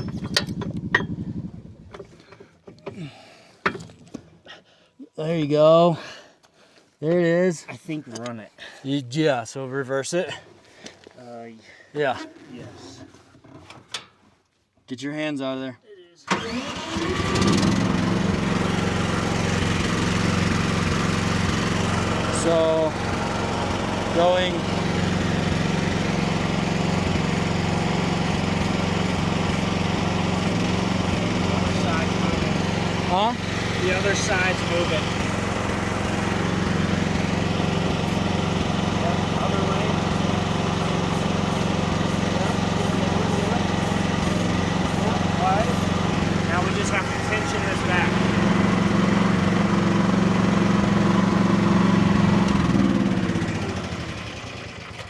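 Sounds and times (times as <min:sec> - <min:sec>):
excavator engine running: 0:16.3 - 0:55.0.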